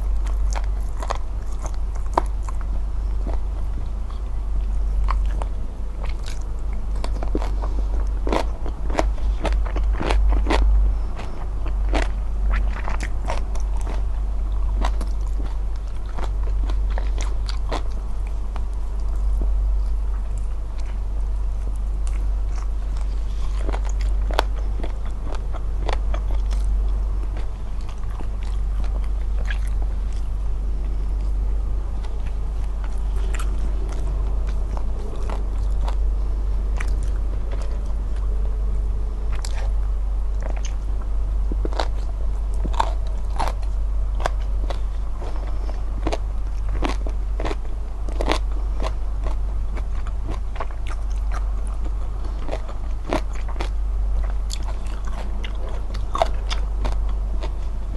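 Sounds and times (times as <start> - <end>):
chewing and biting: 0.0 - 57.9
steady low hum: 0.0 - 57.9.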